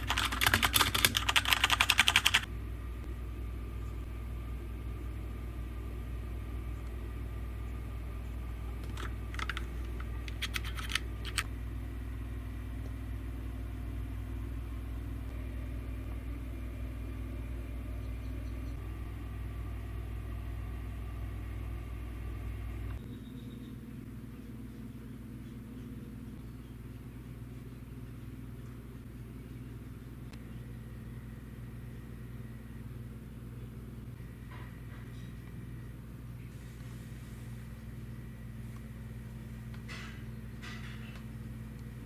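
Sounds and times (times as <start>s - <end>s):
fast typing on mechanical keyboard: 0.0s - 2.5s, 9.0s - 9.6s, 10.3s - 11.4s
steady low hum: 0.0s - 42.0s.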